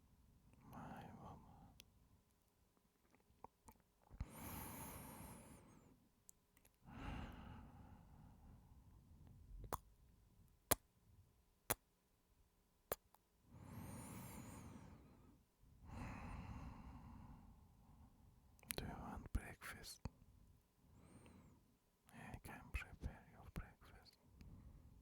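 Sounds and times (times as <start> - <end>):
kiss smacks: 12.9 - 13.2.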